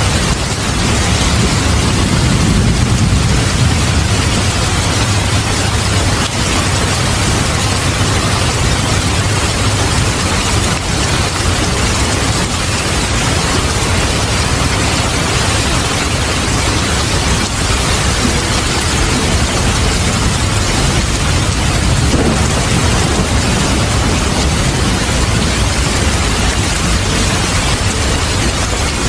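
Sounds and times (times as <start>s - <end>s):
heavy rain falling: 0.0s - 29.0s
low rumble of thunder: 0.0s - 29.0s.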